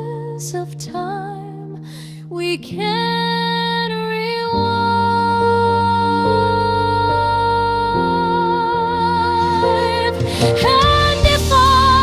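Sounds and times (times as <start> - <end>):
soft sustained instrumental chords: 5.4 - 12.0.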